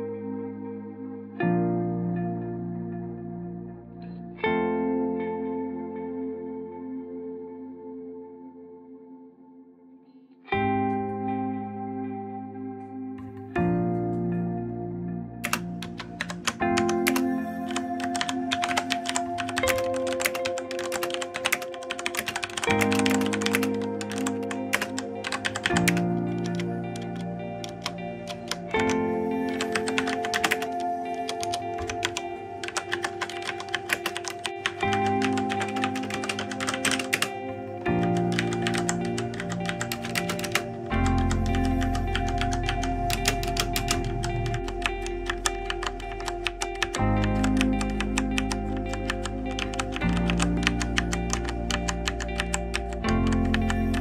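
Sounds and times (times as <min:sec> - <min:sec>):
background music with held tones: 0:00.0 - 0:54.0
fast mechanical keyboard typing: 0:15.4 - 0:37.4, 0:38.1 - 0:54.0.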